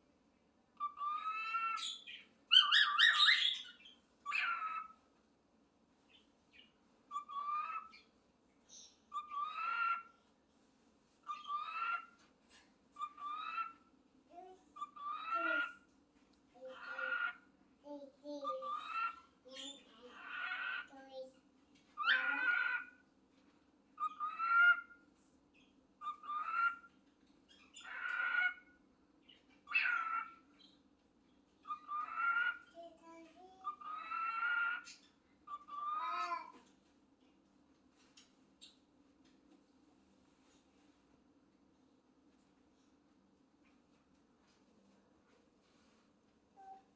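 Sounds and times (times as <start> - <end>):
talking bird mimicking calls: 22.0 - 23.0.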